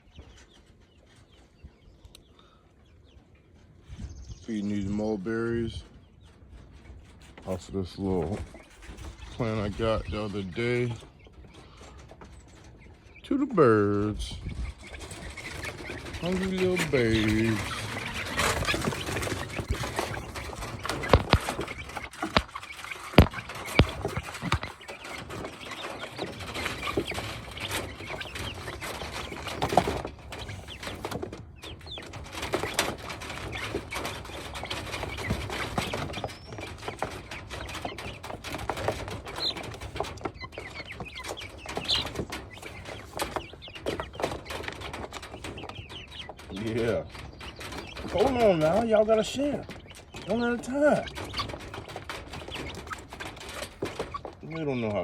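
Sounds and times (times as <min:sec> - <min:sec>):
chickens clucking and chirping: 0:00.0 - 0:55.0.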